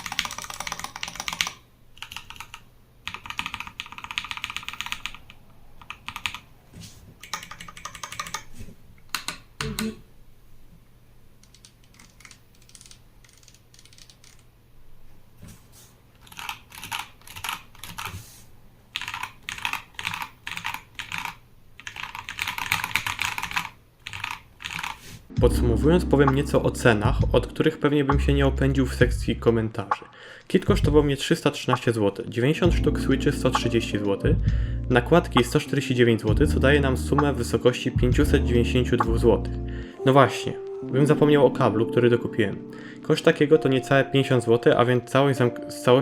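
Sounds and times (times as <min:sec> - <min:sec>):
mechanical keyboard typing: 0:00.0 - 0:06.5, 0:07.2 - 0:08.5, 0:09.1 - 0:10.0, 0:11.4 - 0:14.4, 0:16.2 - 0:18.2, 0:18.9 - 0:25.0.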